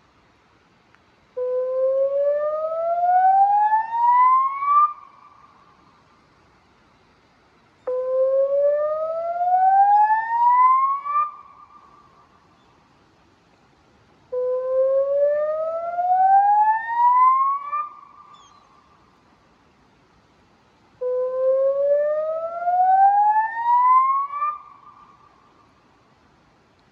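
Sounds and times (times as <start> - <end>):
warning siren whooping: 8.0 - 11.4, 14.6 - 18.0, 21.3 - 24.7.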